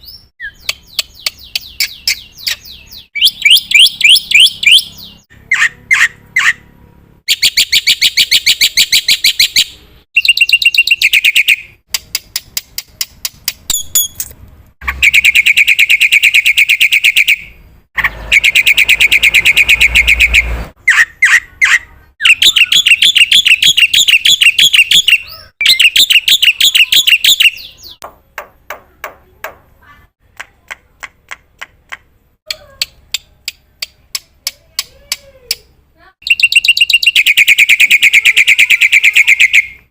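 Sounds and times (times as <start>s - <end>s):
sharp clicking bird notes: 0.4s - 2.7s, 11.9s - 14.4s, 30.3s - 35.7s.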